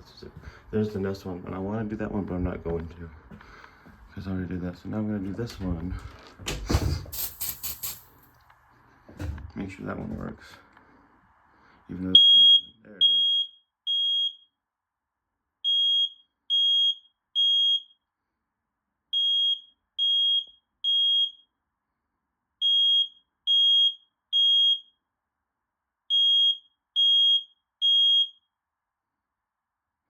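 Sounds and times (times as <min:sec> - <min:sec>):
smoke alarm beeping: 0:12.2 - 0:14.6, 0:15.6 - 0:18.0, 0:19.2 - 0:21.5, 0:22.6 - 0:25.0, 0:26.1 - 0:28.5.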